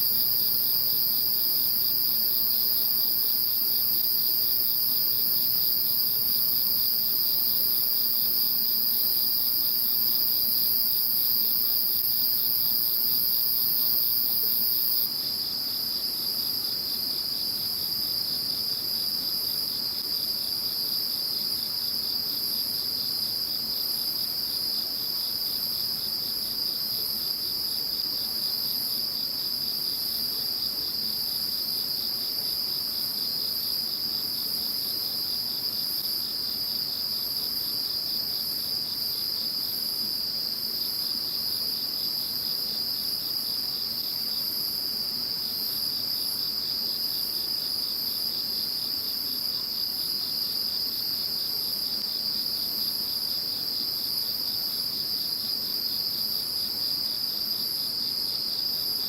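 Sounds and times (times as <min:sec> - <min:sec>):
fast pulsing insect chirp: 0:00.0 - 0:15.1
steady high insect trill: 0:00.0 - 0:59.0.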